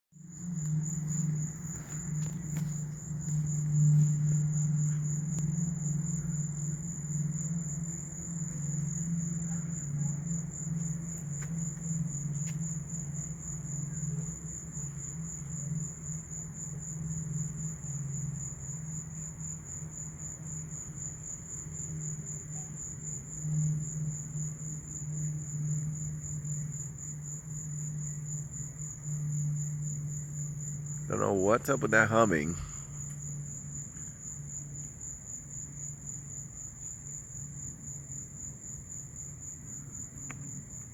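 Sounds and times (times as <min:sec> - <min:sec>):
low humming: 0:00.2 - 0:18.9.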